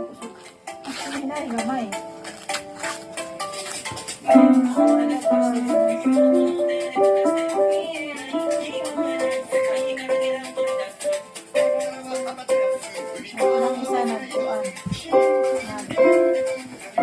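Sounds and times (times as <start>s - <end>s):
plucked-string melody: 0.0s - 2.1s, 4.3s - 10.3s, 12.6s - 17.0s
rattling shaker beat: 0.0s - 17.0s.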